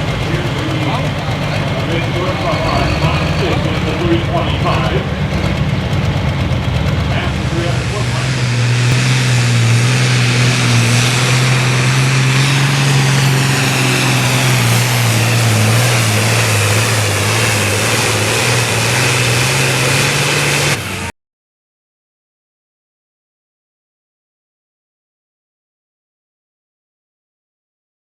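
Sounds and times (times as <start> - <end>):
high whine: 0.0 - 21.1
tractor engine drone: 0.0 - 21.1.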